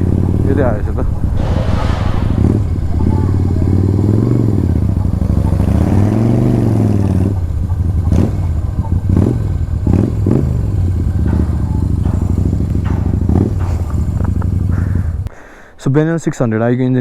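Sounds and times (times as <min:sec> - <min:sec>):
motorcycle engine revving and idling: 0:00.0 - 0:15.3.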